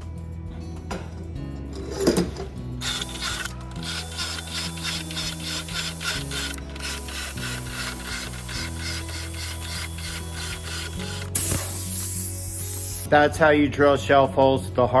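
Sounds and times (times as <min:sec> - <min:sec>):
background music: 0:00.0 - 0:15.0
drill boring into wood: 0:02.8 - 0:13.1.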